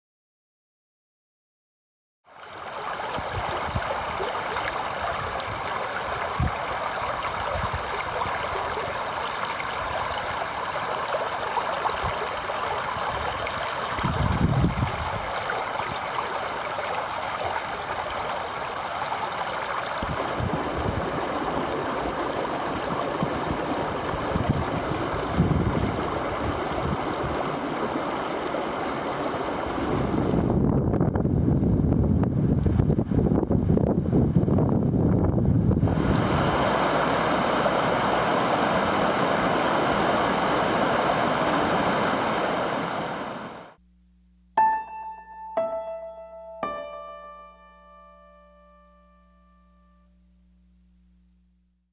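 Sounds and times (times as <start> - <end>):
creek water babbling: 2.3 - 30.5, 35.8 - 43.8.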